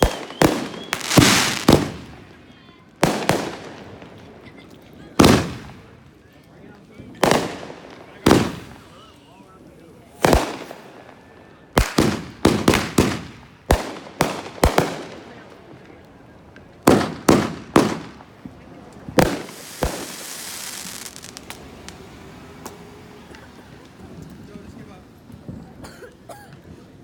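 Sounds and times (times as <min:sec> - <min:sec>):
fireworks sizzling hiss: 0:00.0 - 0:02.2, 0:19.1 - 0:24.4
fireworks bangs: 0:00.0 - 0:06.2, 0:06.9 - 0:09.3, 0:10.0 - 0:25.8.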